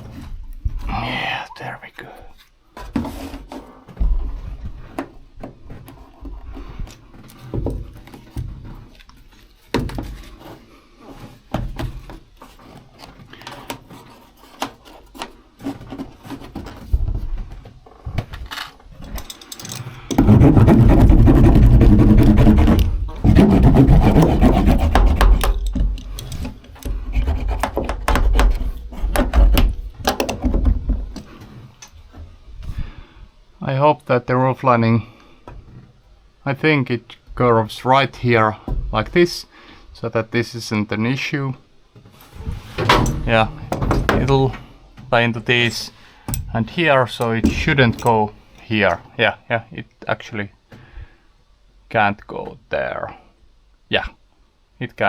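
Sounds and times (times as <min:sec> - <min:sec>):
fast rubbing: 0:20.1 - 0:30.0
knocks and taps on metal panels: 0:22.6 - 0:31.4, 0:42.9 - 0:45.2.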